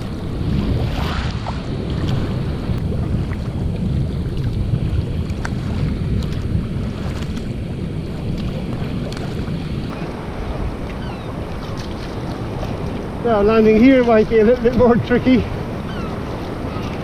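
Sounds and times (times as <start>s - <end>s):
small water splashes: 0.0s - 13.1s
wind buffeting microphone: 0.0s - 17.0s.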